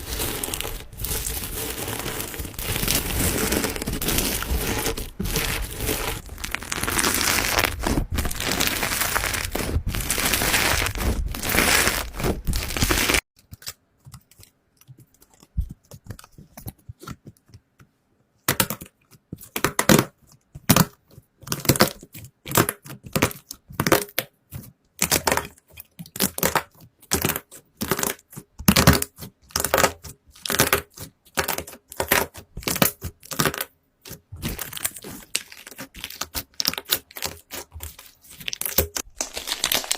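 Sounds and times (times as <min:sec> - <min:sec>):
slime crinkling crackle: 0:00.0 - 0:13.2, 0:34.4 - 0:39.9.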